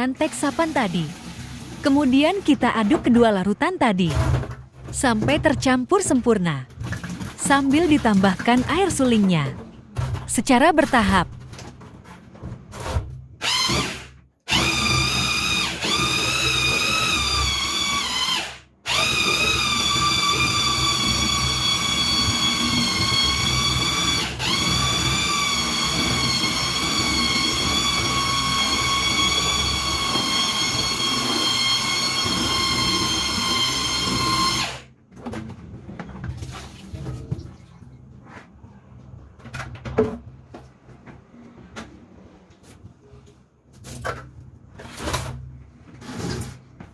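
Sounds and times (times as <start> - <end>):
electric mixer motor whining: 13.4 - 34.9.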